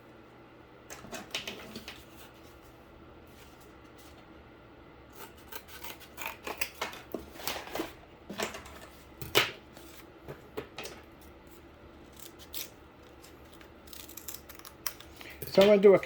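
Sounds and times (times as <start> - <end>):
scissors cutting cardboard: 5.1 - 7.9, 12.1 - 15.2.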